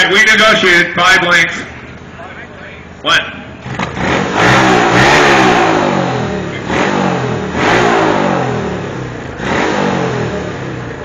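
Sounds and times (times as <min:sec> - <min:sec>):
racing engines at full throttle: 0:03.3 - 0:11.0.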